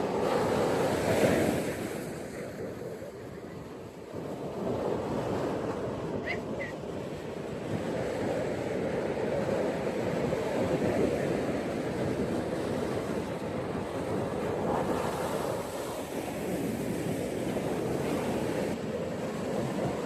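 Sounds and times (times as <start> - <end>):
ocean waves breaking on beach: 0.0 - 20.0.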